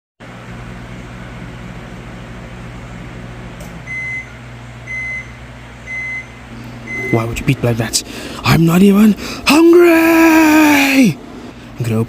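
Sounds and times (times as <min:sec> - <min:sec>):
microwave oven humming: 0:00.2 - 0:12.0
short high beeps: 0:03.9 - 0:07.4.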